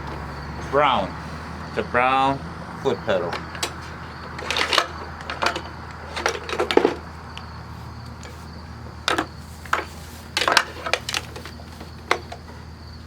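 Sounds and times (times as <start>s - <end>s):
steady low hum: 0.0s - 13.0s
hard objects clattering on workbench: 3.3s - 7.1s, 8.2s - 12.7s.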